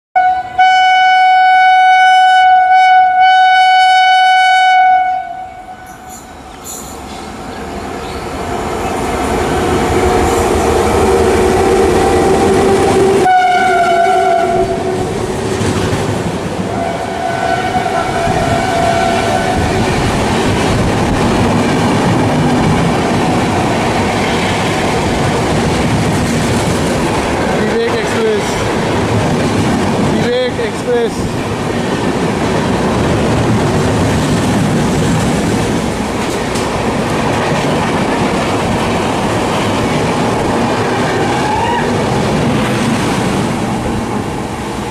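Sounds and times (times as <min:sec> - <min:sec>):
locomotive horn blast: 0:00.2 - 0:06.0, 0:11.0 - 0:15.2, 0:16.7 - 0:19.8
train wheels on rails: 0:05.8 - 0:44.9.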